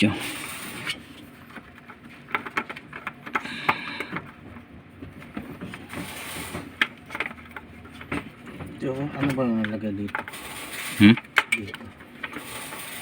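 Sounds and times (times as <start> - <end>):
tools clicking on metal engine parts: 5.6 - 13.0
short scraping rattle: 5.7 - 7.1, 12.2 - 13.0.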